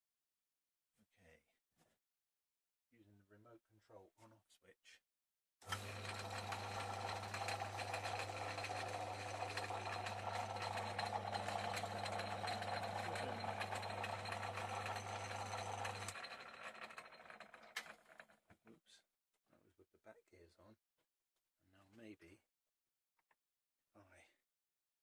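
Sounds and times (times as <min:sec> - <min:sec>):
lathe motor hum: 0:05.6 - 0:18.2
gear train whirr and rattle: 0:05.6 - 0:18.4.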